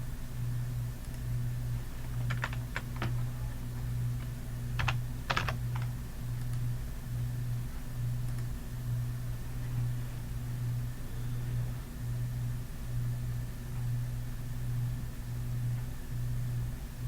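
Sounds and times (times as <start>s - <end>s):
low electrical hum: 0.0s - 17.0s
computer keys clicking: 2.0s - 6.6s.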